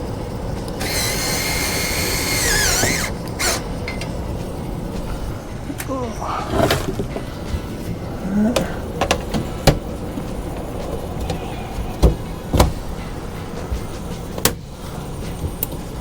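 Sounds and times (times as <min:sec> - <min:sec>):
steady low rumble: 0:02.4 - 0:16.0
cover panels knocking and clicking: 0:12.0 - 0:12.8.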